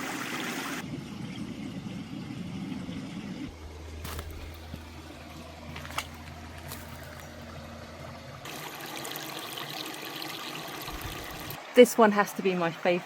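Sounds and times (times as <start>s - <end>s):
low steady hum: 0.8s - 8.5s
water trickling into stone basin: 4.0s - 13.0s.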